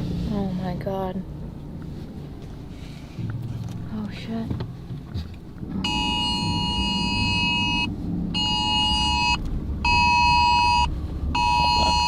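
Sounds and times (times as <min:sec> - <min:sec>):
vehicle driving rumble: 0:00.0 - 0:12.0
electronic warning beeper buzzing: 0:05.8 - 0:12.0.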